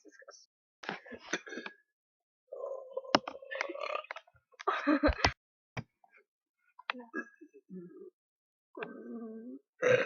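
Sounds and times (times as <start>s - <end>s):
person burping: 2.5s - 4.2s, 8.8s - 10.0s.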